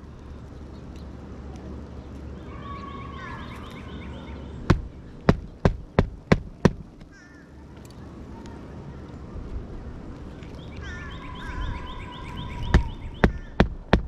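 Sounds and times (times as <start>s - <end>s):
bird chirping: 1.9s - 8.6s, 10.3s - 13.9s
hammer striking nail: 4.7s - 7.0s, 12.7s - 14.0s.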